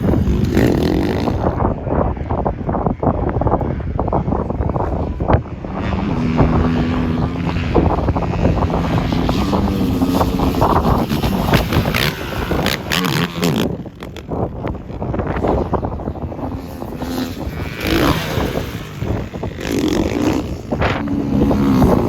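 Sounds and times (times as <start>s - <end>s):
wind buffeting microphone: 0.0s - 22.0s
off-road vehicle engine running: 4.5s - 22.0s.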